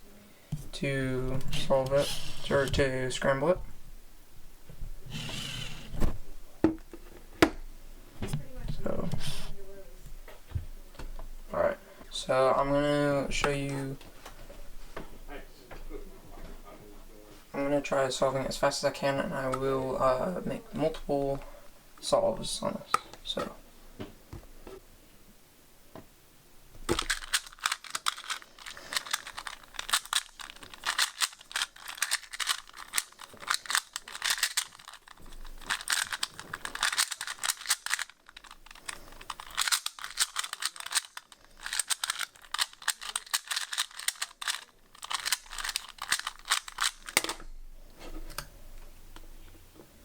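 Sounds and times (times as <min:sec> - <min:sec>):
plastic puzzle cube clicking: 0:26.9 - 0:47.4.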